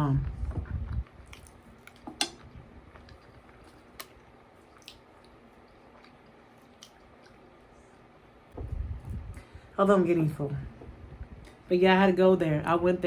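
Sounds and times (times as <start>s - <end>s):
wet chewing: 0.3s - 8.6s.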